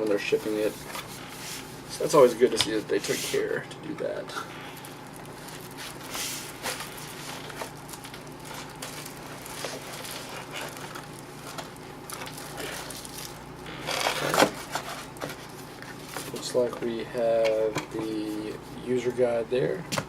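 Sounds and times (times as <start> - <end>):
packing crinkling rustle: 4.5 - 16.9
cardboard and foam clicks and rustles: 4.8 - 16.8.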